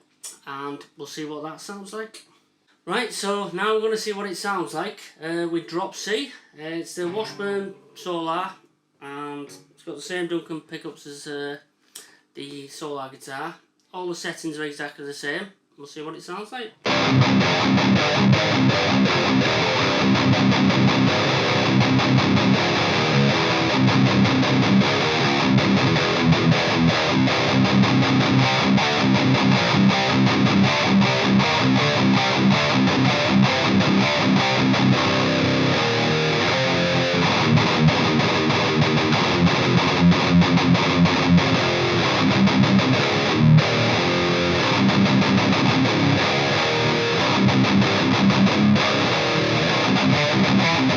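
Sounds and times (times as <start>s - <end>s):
distorted electric guitar: 7.0s - 7.9s, 16.8s - 50.9s.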